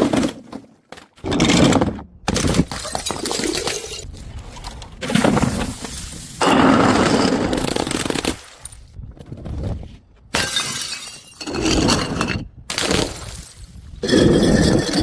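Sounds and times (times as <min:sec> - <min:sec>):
glass bottles shattering: 0:02.7 - 0:04.1, 0:10.4 - 0:15.0.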